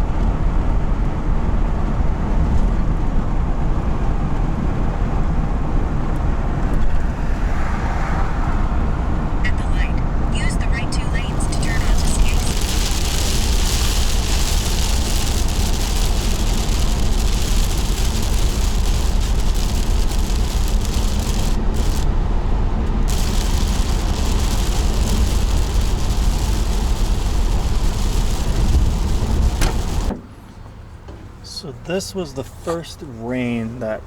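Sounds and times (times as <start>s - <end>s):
van road and engine rumble: 0.0s - 34.0s
rain and tyre spray hiss: 4.9s - 30.4s.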